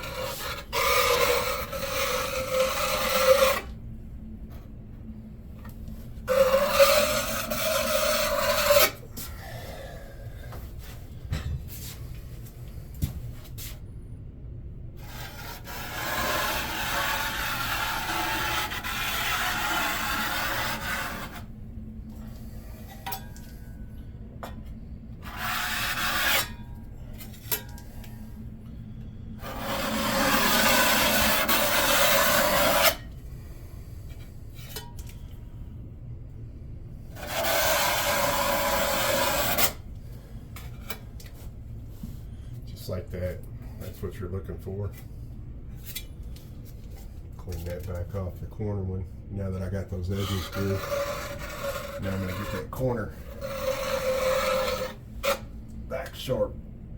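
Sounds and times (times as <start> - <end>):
blade scraping sealant: 0.0 - 3.7, 6.3 - 9.0, 15.0 - 21.5, 25.3 - 26.6, 29.4 - 33.0, 37.2 - 39.8, 50.1 - 55.5.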